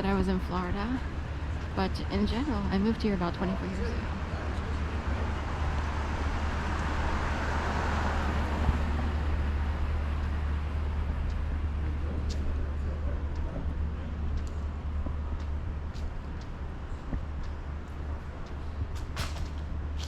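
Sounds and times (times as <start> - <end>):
road traffic rumble: 0.0 - 20.0
vehicle passing: 0.0 - 20.0.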